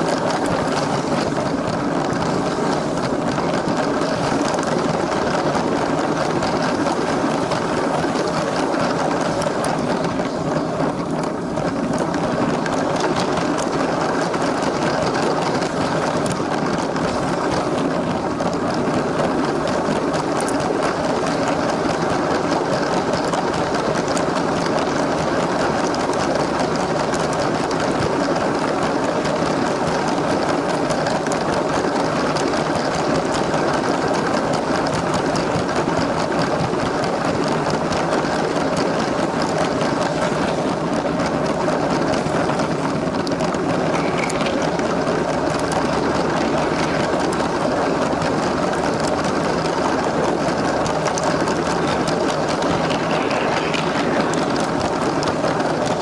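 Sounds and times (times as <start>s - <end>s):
wheels rattling on track: 0.0s - 56.0s
toy train motor whirring: 42.3s - 56.0s.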